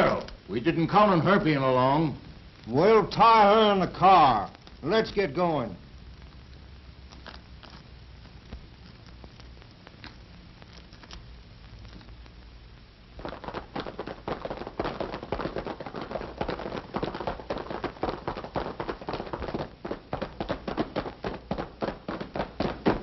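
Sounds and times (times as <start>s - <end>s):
horses galloping hoofbeats: 13.2s - 23.0s.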